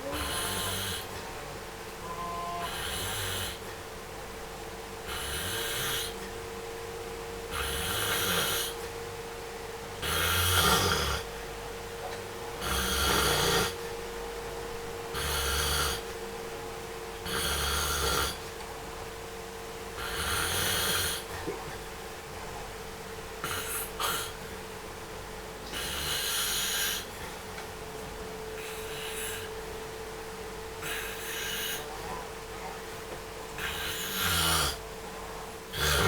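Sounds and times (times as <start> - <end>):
person snoring: 0.0 - 1.1, 7.5 - 8.8, 35.7 - 36.0
faint steady hum: 0.0 - 36.0.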